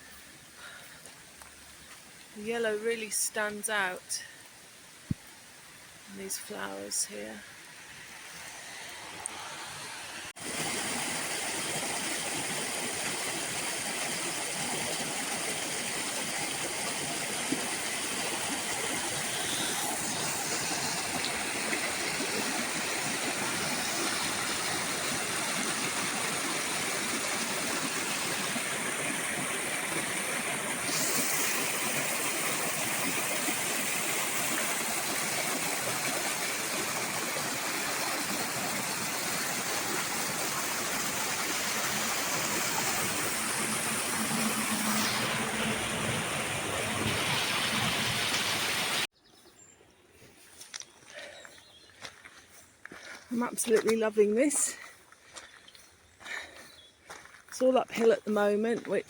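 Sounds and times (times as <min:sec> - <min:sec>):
fast-flowing water rushing: 0:08.1 - 0:49.1.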